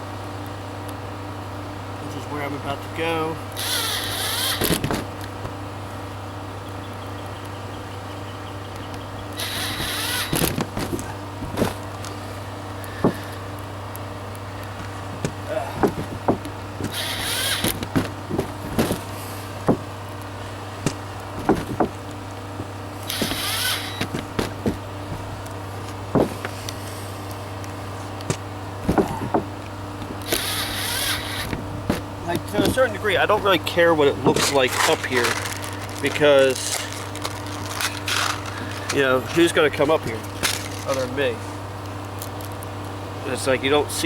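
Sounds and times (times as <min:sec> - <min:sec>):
air conditioner humming: 0:00.0 - 0:44.0
cordless drill whirring: 0:03.5 - 0:04.8, 0:09.4 - 0:11.1, 0:16.8 - 0:17.9, 0:23.0 - 0:24.2, 0:30.2 - 0:31.6
knocks and clicks of tools: 0:14.8 - 0:19.0, 0:23.1 - 0:24.8.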